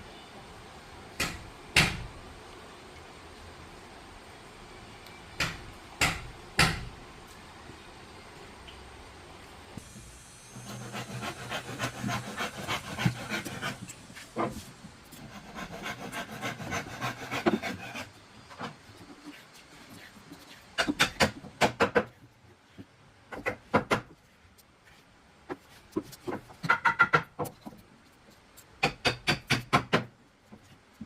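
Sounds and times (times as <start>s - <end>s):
wood rasping by hand: 10.6s - 22.0s.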